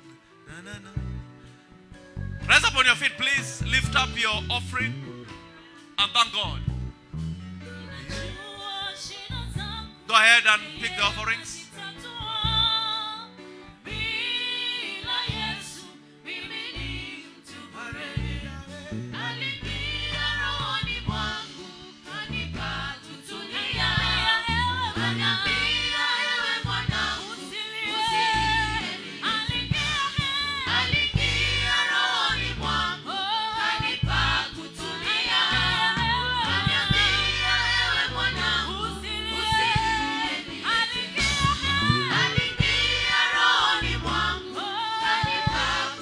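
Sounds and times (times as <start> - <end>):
gospel voices singing: 0.0 - 1.2, 2.4 - 6.8, 7.6 - 46.0
band with moving bass line: 2.2 - 5.4, 6.0 - 8.5, 9.6 - 11.6, 23.8 - 26.0, 28.2 - 33.0, 33.8 - 44.5.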